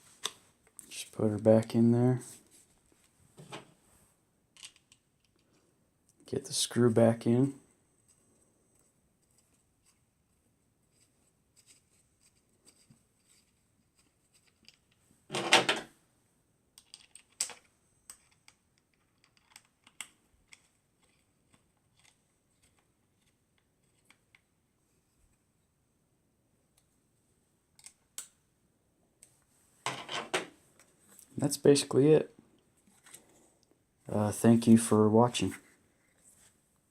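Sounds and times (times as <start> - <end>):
metal rifle parts clicking: 16.8 - 21.2.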